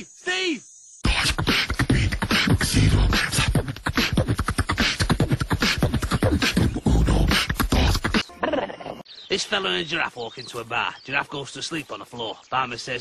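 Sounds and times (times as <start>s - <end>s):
person beatboxing: 1.0s - 8.3s.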